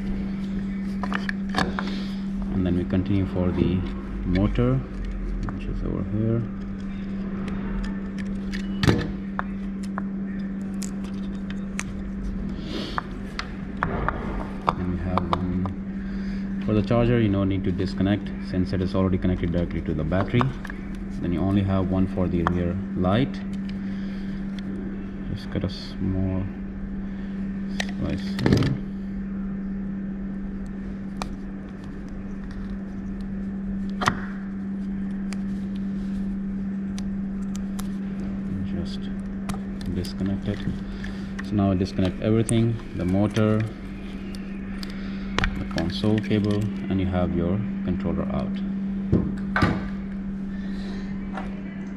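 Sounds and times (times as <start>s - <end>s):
steady low hum: 0.0s - 51.9s
plastic connectors being handled: 39.2s - 46.8s.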